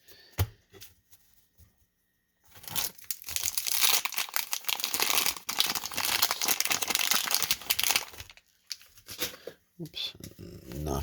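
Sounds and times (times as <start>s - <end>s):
wax paper wrapper crinkling: 2.5s - 9.3s.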